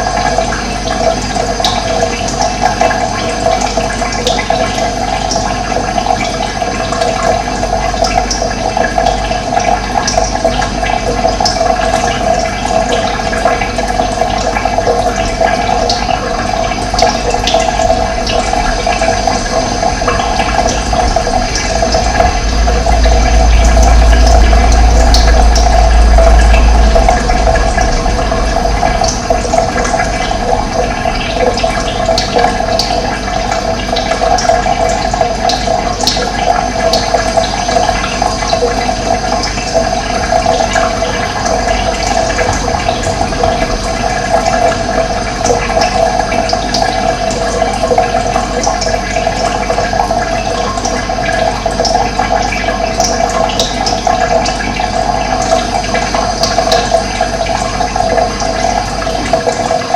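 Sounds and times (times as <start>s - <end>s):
running water rushing: 0.0s - 59.9s
low rumble: 9.8s - 48.7s.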